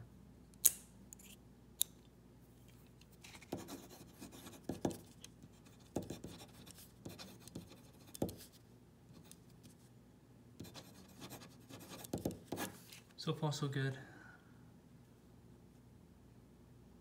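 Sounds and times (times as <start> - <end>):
pen writing on paper: 3.5 - 5.0, 5.6 - 8.5, 10.6 - 12.8.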